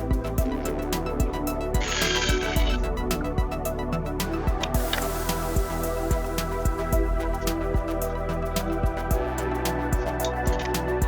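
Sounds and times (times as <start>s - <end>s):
electronic music with steady beat: 0.0s - 11.0s.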